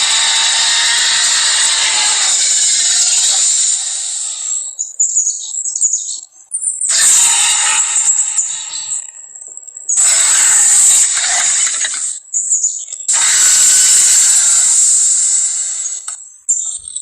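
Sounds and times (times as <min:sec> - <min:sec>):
harsh creature roars: 0:00.0 - 0:04.6, 0:06.9 - 0:09.2.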